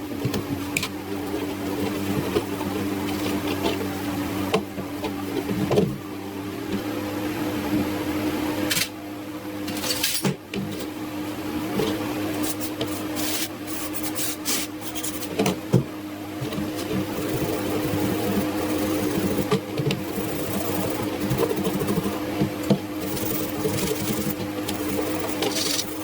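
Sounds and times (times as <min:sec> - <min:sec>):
clicks and hissing scrapes: 0:12.4 - 0:15.4
electric motor humming: 0:16.4 - 0:26.0.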